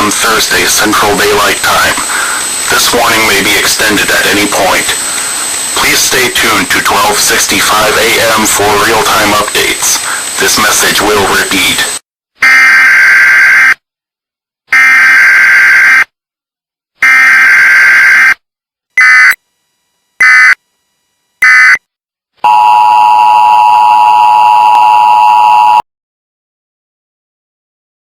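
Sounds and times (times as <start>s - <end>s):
buzzing data bursts: 0.0s - 12.0s.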